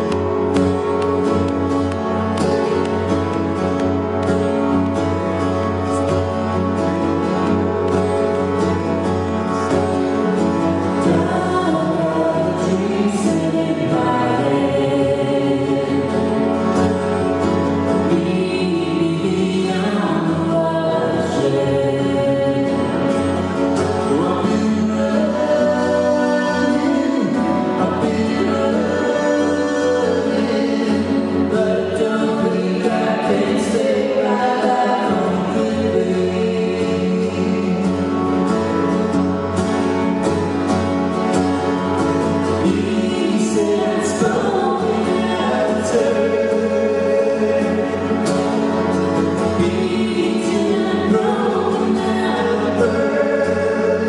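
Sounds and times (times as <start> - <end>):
live band playing: 0.0 - 54.0
person singing: 7.8 - 38.9, 42.4 - 54.0.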